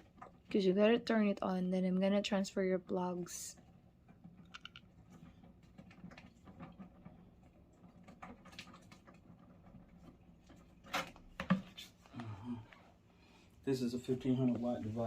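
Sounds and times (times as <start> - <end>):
objects clicking and rustling: 4.0 - 11.8.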